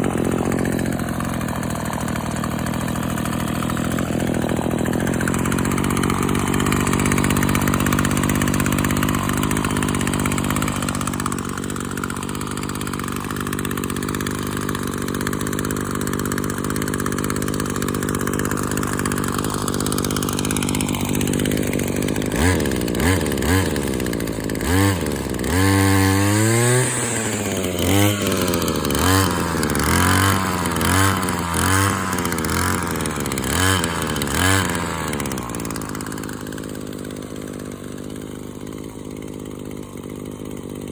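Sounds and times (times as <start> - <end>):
small petrol engine revving: 0.0 - 40.9.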